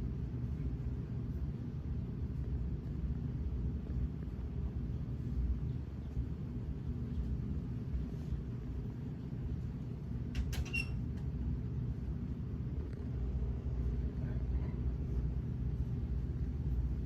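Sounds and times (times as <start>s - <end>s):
ceiling fan humming: 0.0s - 17.0s.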